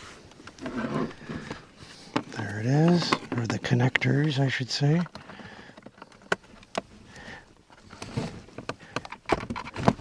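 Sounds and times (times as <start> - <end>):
small plastic clicks and knocks: 2.1 - 7.3, 8.0 - 10.0
plastic clack: 8.0 - 10.0.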